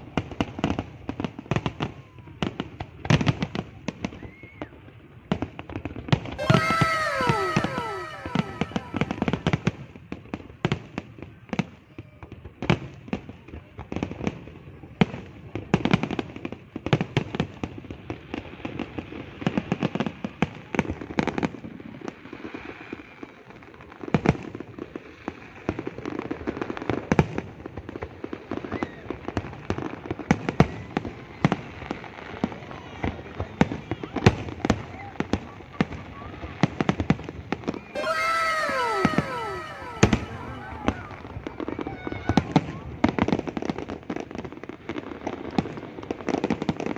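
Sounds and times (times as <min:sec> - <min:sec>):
falling firework whistle: 0:06.4 - 0:09.7, 0:38.0 - 0:41.6.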